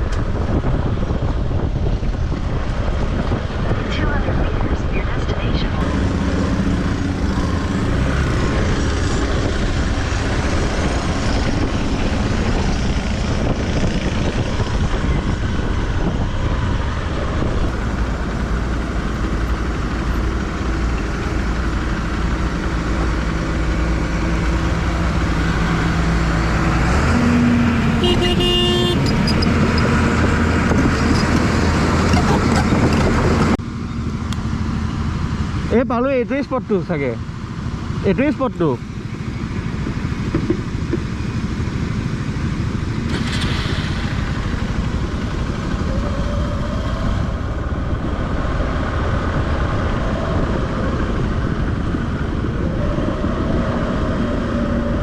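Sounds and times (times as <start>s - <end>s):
motorcycle engine revving: 5.8s - 33.6s
short horn toot: 28.0s - 29.2s.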